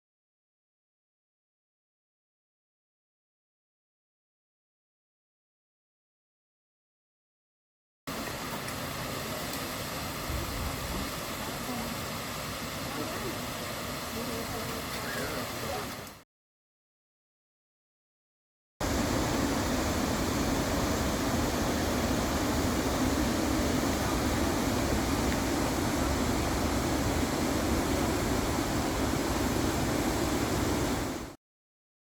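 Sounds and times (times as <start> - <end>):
waterfall rushing: 8.1 - 16.2, 18.8 - 31.4.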